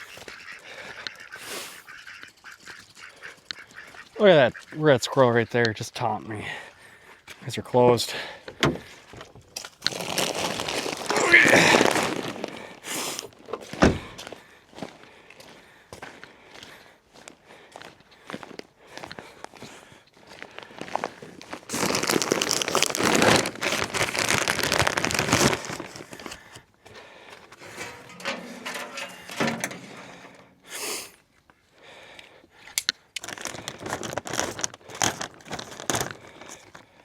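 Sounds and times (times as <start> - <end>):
material crinkling and tearing: 9.6 - 13.4, 20.8 - 26.6, 33.2 - 36.7.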